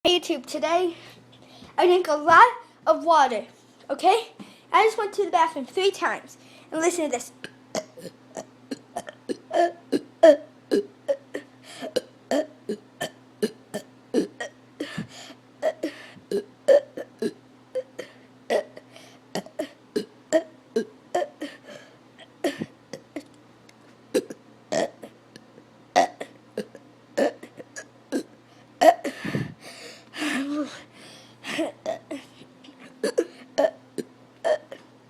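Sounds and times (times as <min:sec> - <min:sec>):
person burping: 0:07.4 - 0:14.6, 0:15.6 - 0:21.6, 0:24.2 - 0:25.2, 0:26.0 - 0:29.2, 0:31.6 - 0:32.2, 0:33.0 - 0:34.9.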